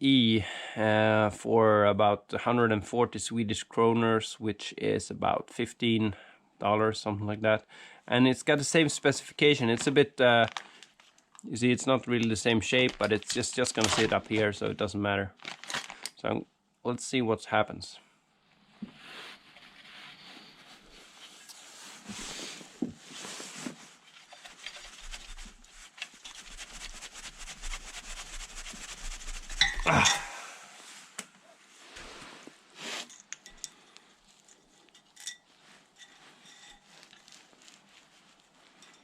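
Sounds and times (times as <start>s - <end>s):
rustling: 9.6s - 11.4s, 12.0s - 14.7s, 15.3s - 16.1s, 18.5s - 30.0s, 30.7s - 39.0s
metal tools clattering: 29.6s - 30.3s, 33.0s - 37.3s.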